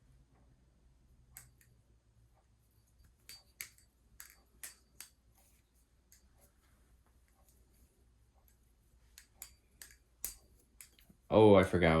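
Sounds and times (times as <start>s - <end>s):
butterfly knife clicking: 9.2s - 11.1s.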